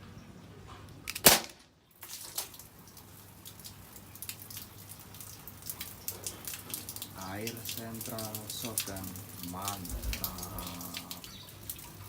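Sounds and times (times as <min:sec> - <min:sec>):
airsoft pistol shot: 0:01.2 - 0:01.6.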